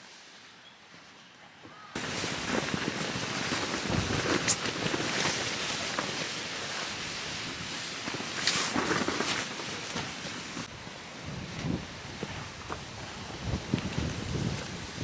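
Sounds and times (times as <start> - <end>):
wood fire crackling: 2.0 - 10.7.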